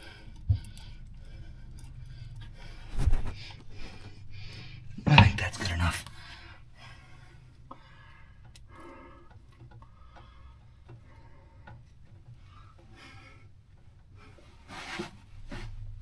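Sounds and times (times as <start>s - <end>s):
rustling burst: 2.9s - 3.5s.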